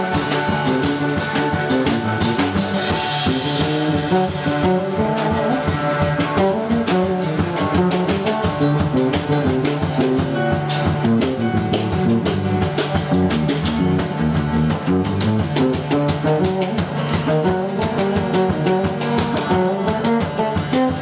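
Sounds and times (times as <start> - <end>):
band music with guitar and drums: 0.0 - 21.0.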